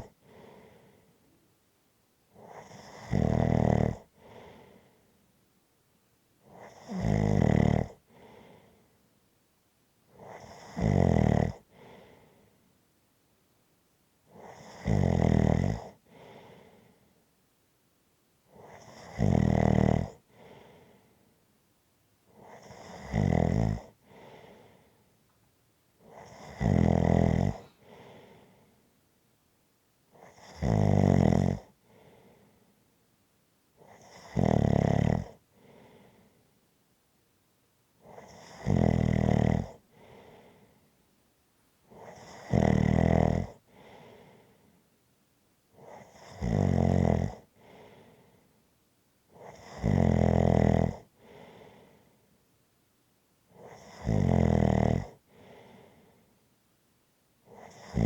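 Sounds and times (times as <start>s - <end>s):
person snoring: 2.4s - 4.6s, 6.6s - 8.3s, 10.2s - 11.7s, 14.4s - 16.0s, 18.7s - 20.7s, 22.4s - 24.6s, 26.1s - 28.5s, 30.2s - 31.7s, 33.9s - 36.2s, 38.1s - 40.6s, 41.9s - 44.3s, 45.9s - 47.9s, 49.4s - 51.8s, 53.6s - 55.9s, 57.5s - 58.0s.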